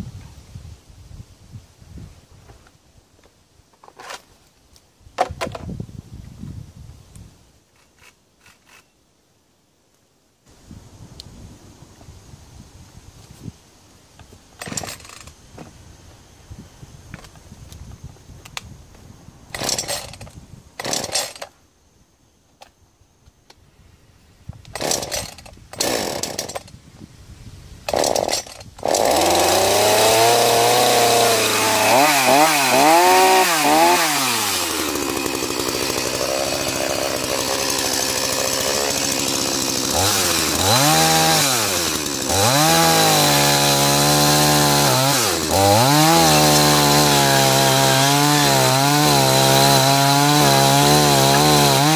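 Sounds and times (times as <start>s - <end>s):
chainsaw revving: 19.6s - 20.2s, 20.8s - 21.4s, 24.8s - 26.7s, 27.9s - 51.9s.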